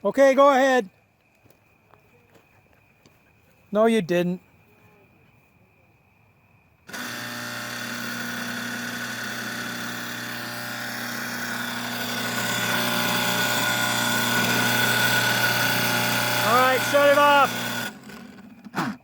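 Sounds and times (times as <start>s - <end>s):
well pump running: 6.9s - 19.0s.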